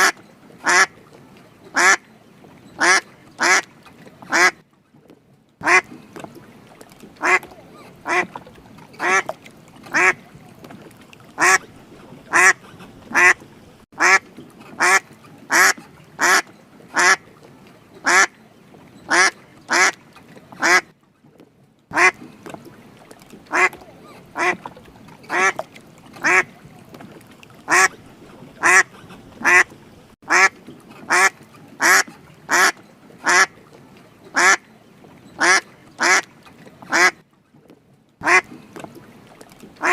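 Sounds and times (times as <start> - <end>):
duck quacking: 0.0 - 0.9, 1.8 - 2.0, 2.8 - 3.6, 4.3 - 4.6, 5.6 - 5.9, 7.2 - 8.3, 9.0 - 9.3, 9.9 - 10.2, 11.4 - 11.6, 12.3 - 13.4, 14.0 - 14.2, 14.8 - 16.4, 17.0 - 17.2, 18.0 - 18.3, 19.1 - 20.0, 20.6 - 20.8, 21.9 - 22.2, 23.5 - 23.8, 24.4 - 24.6, 25.3 - 25.6, 26.2 - 26.5, 27.7 - 28.0, 28.6 - 29.7, 30.3 - 30.5, 31.1 - 33.5, 34.4 - 34.6, 35.4 - 36.2, 36.9 - 37.2, 38.2 - 38.5.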